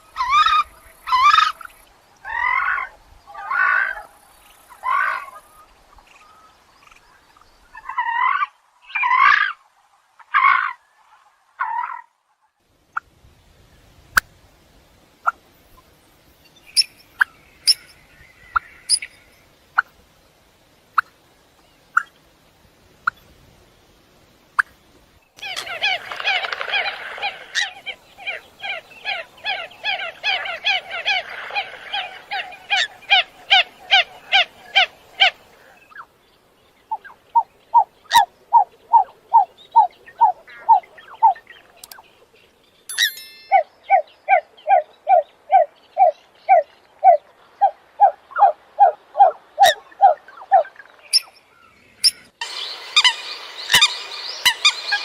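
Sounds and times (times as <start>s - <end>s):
coots calling: 25.4s - 36.1s, 42.9s - 55.0s.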